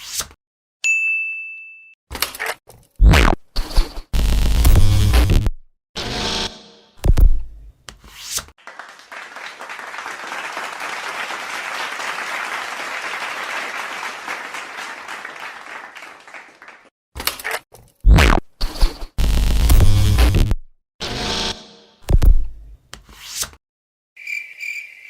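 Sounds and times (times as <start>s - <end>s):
crowd applauding: 8.6s - 16.9s.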